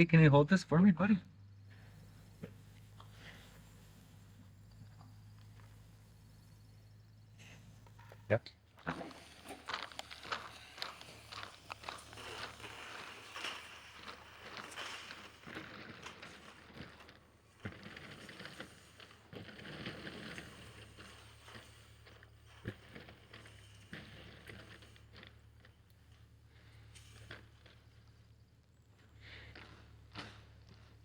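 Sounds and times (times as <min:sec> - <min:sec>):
steady low hum: 0:00.0 - 0:31.0
plastic membrane rustling and scraping: 0:07.4 - 0:28.3.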